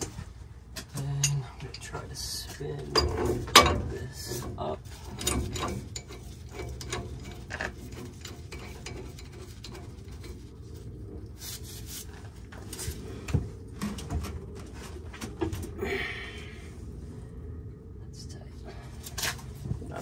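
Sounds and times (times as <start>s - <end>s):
metal pipe fitting scraping on threads: 2.8s - 12.1s.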